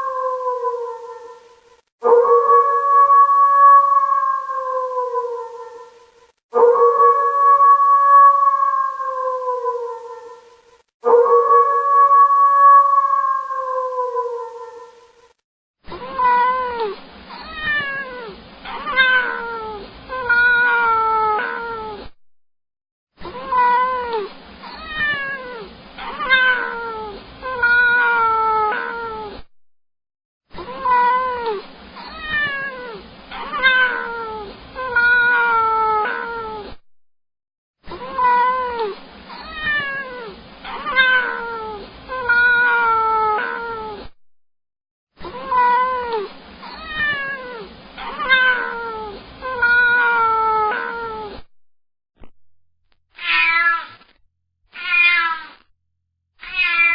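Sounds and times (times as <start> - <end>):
cat meowing: 16.2 - 21.8, 24.8 - 29.2, 32.0 - 36.6, 38.0 - 44.0, 45.4 - 51.3, 53.2 - 54.0, 54.7 - 55.6, 56.4 - 56.9.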